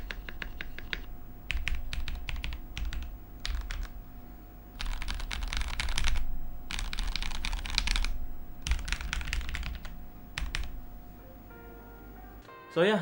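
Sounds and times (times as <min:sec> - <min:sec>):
mechanical keyboard typing: 0:00.0 - 0:04.0, 0:04.8 - 0:10.8.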